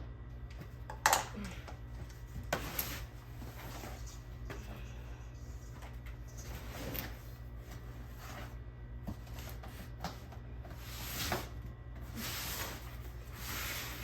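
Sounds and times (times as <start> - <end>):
steady low hum: 0.0 - 14.0
cardboard rustling and scraping: 5.6 - 14.0.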